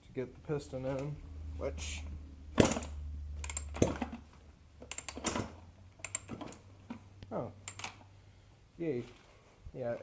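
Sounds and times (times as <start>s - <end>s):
engine kick-starter clicks and knocks: 2.5s - 7.0s.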